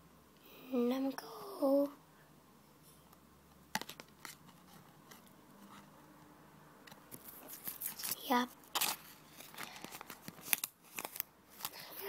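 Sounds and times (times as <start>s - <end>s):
low room hiss: 0.0s - 12.0s
card handling clicks and rustles: 3.7s - 5.4s, 6.9s - 12.0s.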